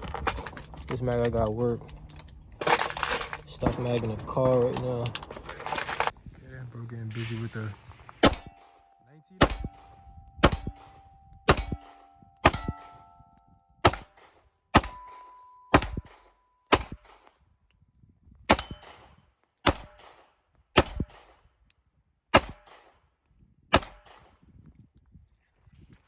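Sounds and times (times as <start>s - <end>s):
pistol shots: 8.2s - 13.2s, 13.8s - 17.3s, 18.5s - 21.4s, 22.3s - 23.0s, 23.7s - 24.3s.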